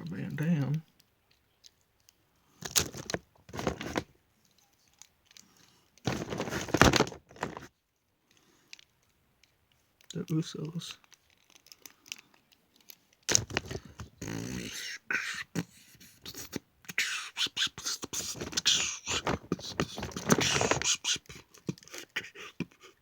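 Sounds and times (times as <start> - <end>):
person beatboxing mouth sounds: 14.2 - 23.0.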